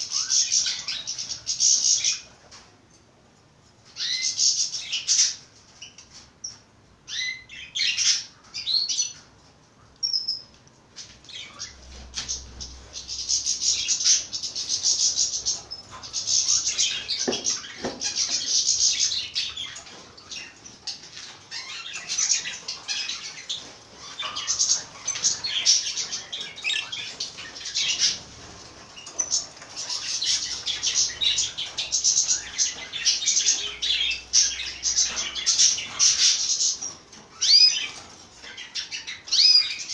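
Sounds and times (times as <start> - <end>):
small birds chirping: 0.0 - 39.9.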